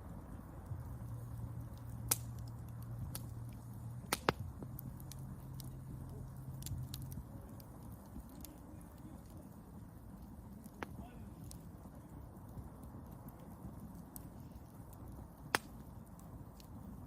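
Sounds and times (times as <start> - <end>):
wood fire crackling: 0.0 - 17.0.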